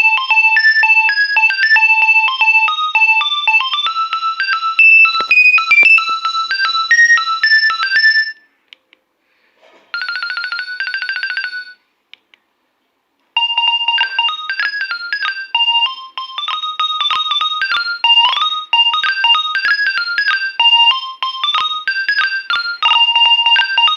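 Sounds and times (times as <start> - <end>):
rapid repeating notes: 0.0 - 7.8
mobile phone ringtone melody: 0.0 - 8.5, 10.0 - 11.8, 13.4 - 23.9.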